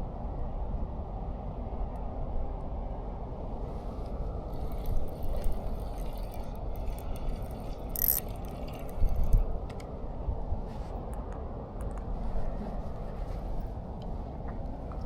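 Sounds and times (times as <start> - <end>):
light clicks and clinks: 3.9 - 9.9.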